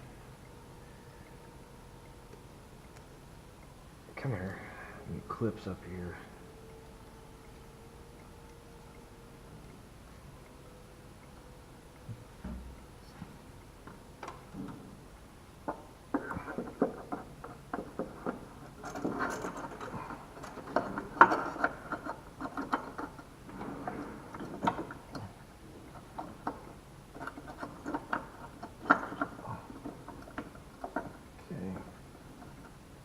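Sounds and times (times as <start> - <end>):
small parts clicking and rattling: 15.6 - 33.0.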